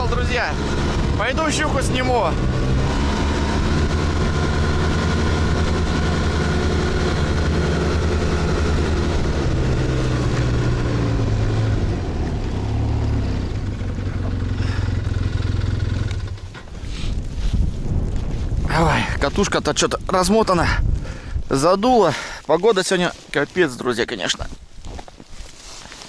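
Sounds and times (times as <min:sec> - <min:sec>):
snow vehicle engine running: 0:00.0 - 0:19.5.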